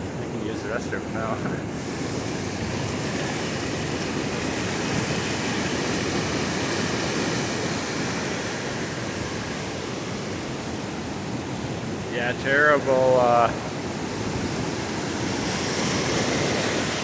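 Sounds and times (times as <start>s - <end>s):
surf washing up beach: 0.0s - 17.0s.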